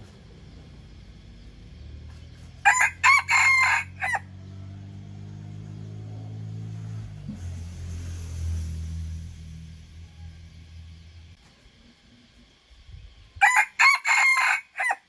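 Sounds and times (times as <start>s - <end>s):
young rooster crowing: 2.6s - 4.3s, 13.4s - 15.0s
low steady hum: 6.7s - 14.8s.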